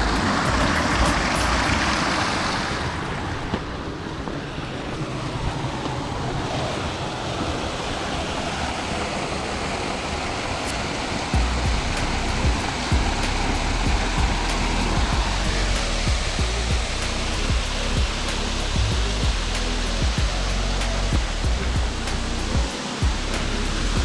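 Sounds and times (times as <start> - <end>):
flowing water: 0.0 - 24.0
wind rumble on microphone: 0.0 - 24.0.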